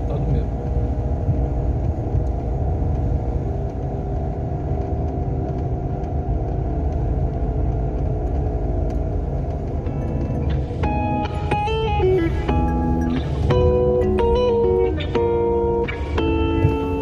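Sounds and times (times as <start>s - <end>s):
car engine and road rumble: 0.0s - 17.0s
music: 9.7s - 17.0s.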